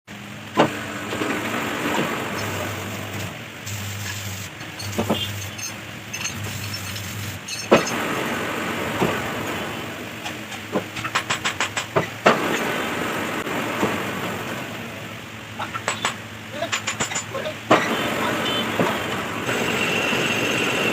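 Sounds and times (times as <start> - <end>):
metal lathe running: 0.8 - 9.5, 17.7 - 20.9
sharp metallic clicks: 10.2 - 12.6, 15.8 - 17.9.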